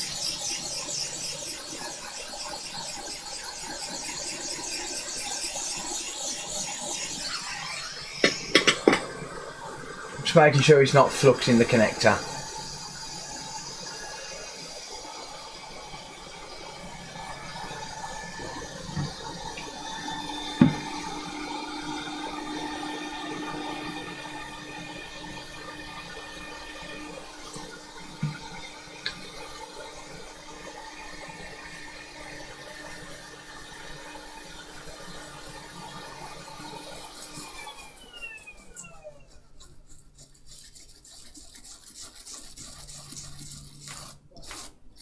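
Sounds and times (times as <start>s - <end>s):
hot air station hissing: 7.0s - 33.2s
sharp clicks and taps: 8.2s - 9.1s
fan winding down: 15.0s - 29.9s.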